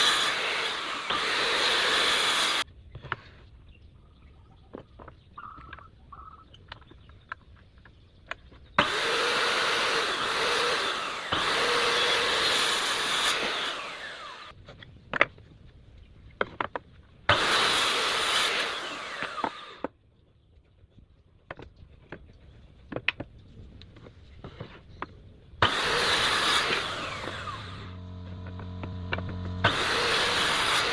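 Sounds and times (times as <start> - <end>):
circular saw cutting wood: 0.0 - 2.6, 8.8 - 14.6, 17.3 - 19.9, 25.6 - 30.9
saw blade winding down: 0.0 - 2.6, 8.8 - 14.5, 17.3 - 19.9, 25.6 - 30.9.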